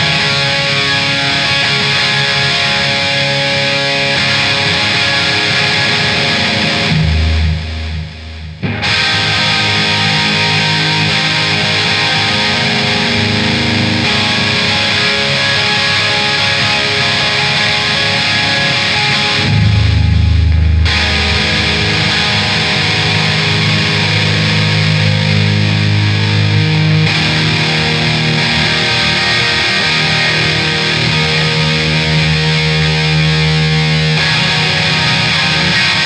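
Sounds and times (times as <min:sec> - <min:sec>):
electric guitar: 0:00.0 - 0:36.0
heavy rock band: 0:00.0 - 0:36.0
low held bass note: 0:19.4 - 0:22.4.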